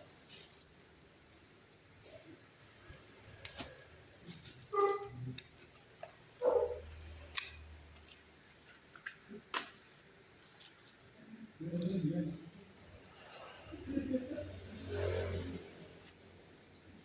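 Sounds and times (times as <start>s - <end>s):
clicks and taps of objects handled: 7.3s - 9.8s.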